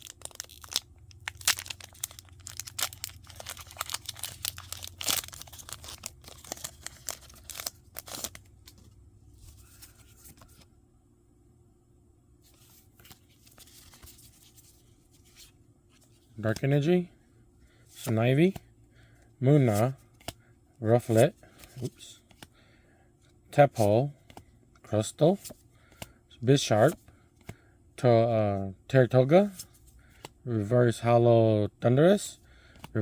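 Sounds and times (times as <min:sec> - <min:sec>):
foil wrapper tearing and crinkling: 0:00.0 - 0:08.5.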